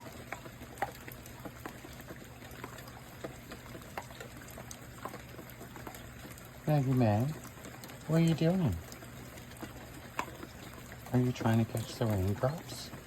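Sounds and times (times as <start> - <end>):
low steady hum: 0.0 - 13.0
raindrops dripping and tapping: 0.0 - 13.0.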